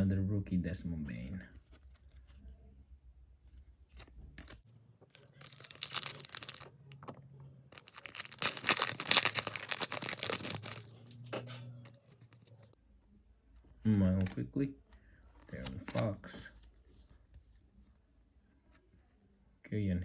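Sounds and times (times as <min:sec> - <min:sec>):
foil wrapper tearing and crinkling: 0:05.2 - 0:06.7, 0:07.8 - 0:11.2.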